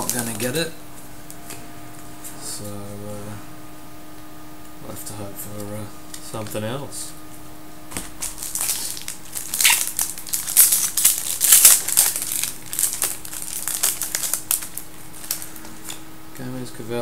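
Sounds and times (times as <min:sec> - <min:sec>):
foil wrapper crinkling: 0:00.0 - 0:00.6, 0:07.9 - 0:16.0.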